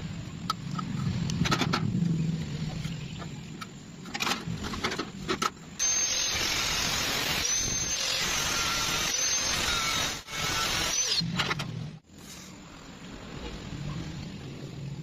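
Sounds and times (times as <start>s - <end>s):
welding arc crackling: 5.8s - 11.2s.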